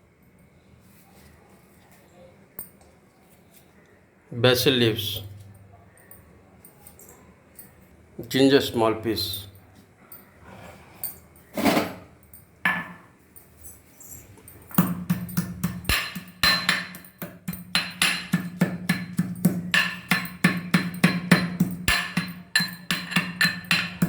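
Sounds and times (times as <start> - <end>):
pestle pounding in a mortar: 14.8 - 24.0.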